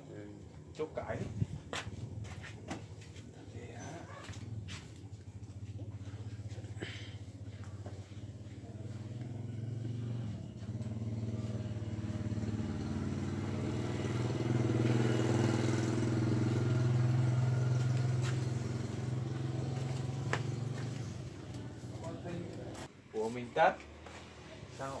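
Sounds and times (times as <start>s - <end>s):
small engine humming: 6.0s - 22.9s.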